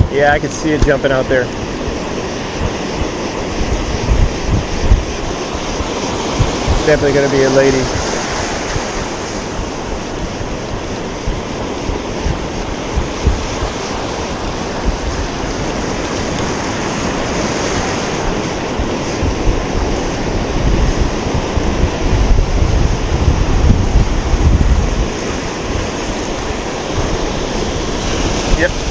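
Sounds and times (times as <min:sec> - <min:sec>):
ocean surf on beach: 0:00.0 - 0:28.9
wind buffeting microphone: 0:00.0 - 0:28.9.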